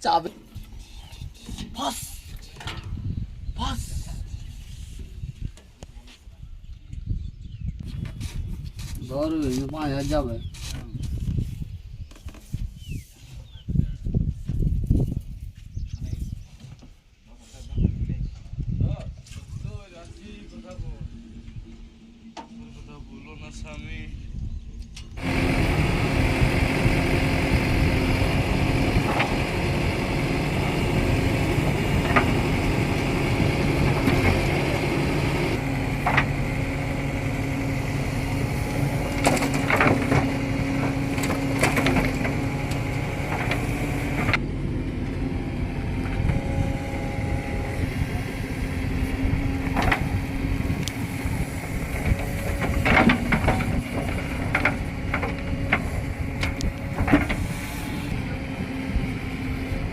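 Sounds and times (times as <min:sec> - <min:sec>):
diesel engine under load: 0:25.1 - 0:59.9.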